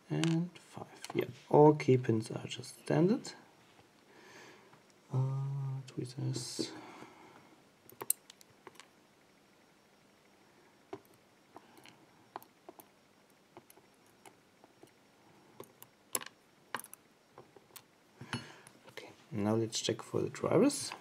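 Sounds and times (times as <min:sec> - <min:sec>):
tweezers clicking on lock pins: 0:07.9 - 0:08.5.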